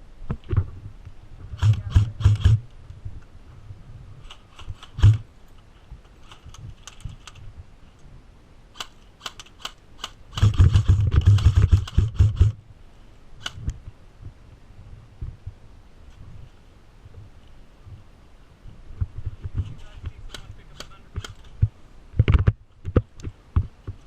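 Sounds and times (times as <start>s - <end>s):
clatter and low thumps: 0.3s - 3.2s, 4.2s - 5.3s, 10.3s - 12.6s, 21.2s - 24.0s
airsoft clicks and knocks: 19.4s - 24.0s.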